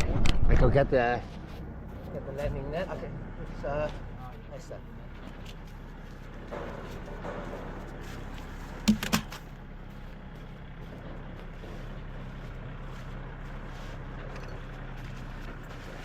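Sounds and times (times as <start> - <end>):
low mechanical hum: 0.0 - 16.0
sharp knocks: 8.8 - 9.5.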